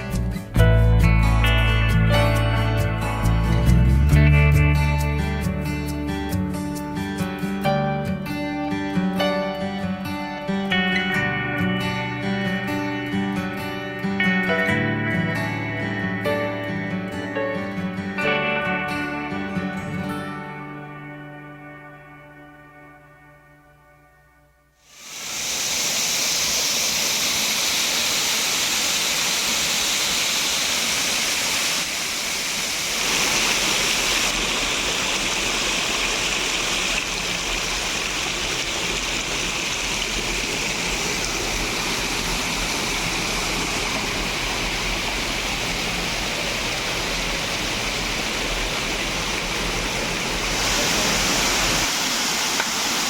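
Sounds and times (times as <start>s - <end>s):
water rushing over waterfalls: 24.9s - 53.0s.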